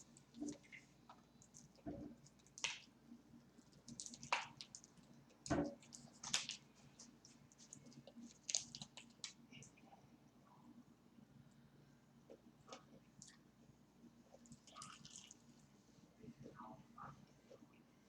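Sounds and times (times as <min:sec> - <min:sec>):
chewing with wet smacks: 0:14.4 - 0:15.5.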